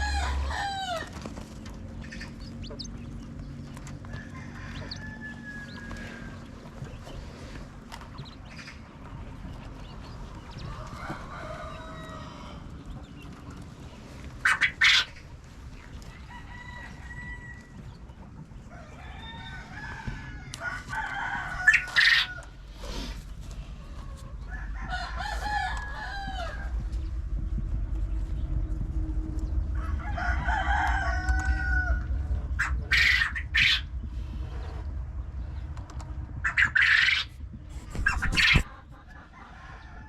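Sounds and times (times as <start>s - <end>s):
rooster crowing: 0.0s - 1.2s, 4.0s - 6.5s, 10.6s - 12.7s, 16.2s - 17.8s, 18.8s - 22.6s, 24.1s - 26.8s, 29.8s - 32.3s
chickens clucking: 0.0s - 27.1s, 29.7s - 34.9s, 35.8s - 40.0s.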